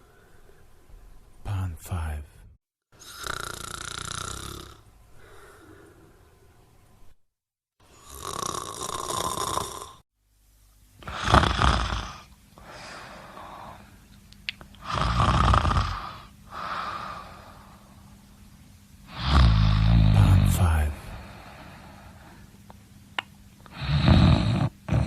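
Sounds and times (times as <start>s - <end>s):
faint steady hum: 0.0s - 7.2s, 7.8s - 25.0s
person snoring: 3.0s - 6.3s, 7.9s - 10.0s, 11.0s - 14.0s, 14.8s - 18.0s, 19.1s - 22.4s, 23.7s - 25.0s.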